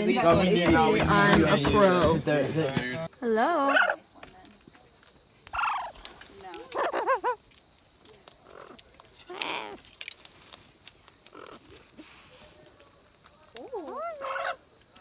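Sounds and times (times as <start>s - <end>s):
high-pitched insect chorus: 3.1s - 15.0s
short wavering calls: 5.4s - 7.5s, 13.6s - 14.7s.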